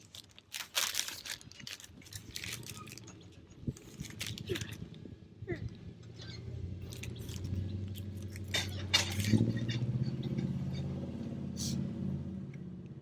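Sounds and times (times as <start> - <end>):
food wrappers crinkling: 0.0 - 5.0, 6.8 - 9.5.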